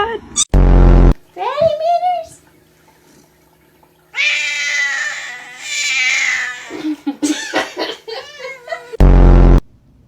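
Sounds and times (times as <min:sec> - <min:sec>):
cat yowling: 0:04.1 - 0:09.0.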